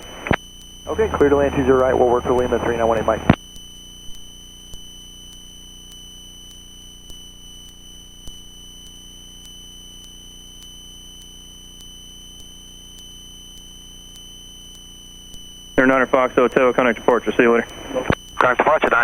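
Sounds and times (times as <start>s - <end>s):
faint ticks: 0.0s - 0.9s, 3.3s - 15.8s
low hum: 0.0s - 8.6s
high-pitched electrical whine: 0.0s - 19.0s.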